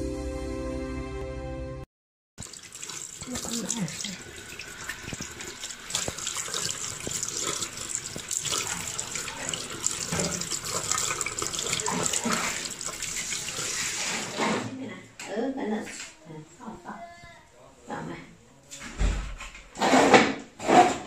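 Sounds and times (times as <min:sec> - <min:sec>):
tap water splashing into sink: 0:02.4 - 0:14.5.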